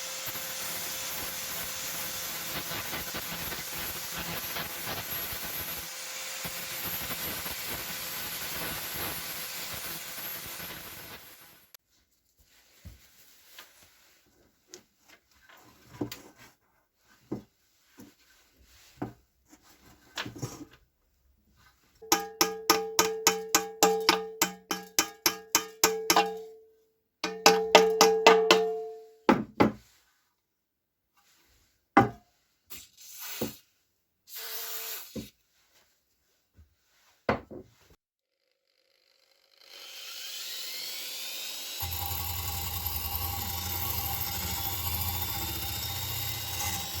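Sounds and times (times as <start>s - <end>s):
rapid taps on ringing metal: 22.0s - 26.5s, 27.2s - 28.9s.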